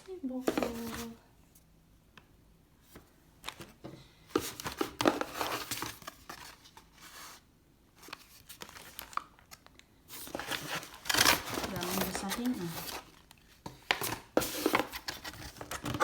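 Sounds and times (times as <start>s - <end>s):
packaging crinkling and tearing: 8.0s - 16.0s.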